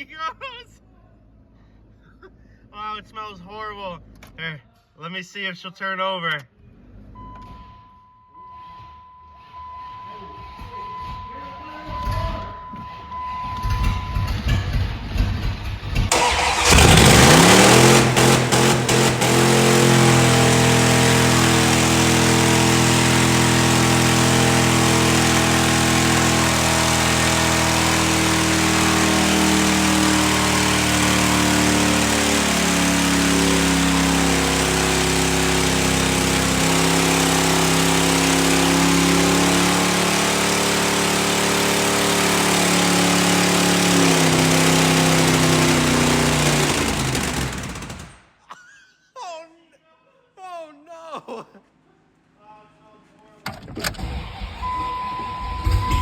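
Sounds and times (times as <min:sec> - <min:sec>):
truck engine running: 0:16.0 - 0:48.3.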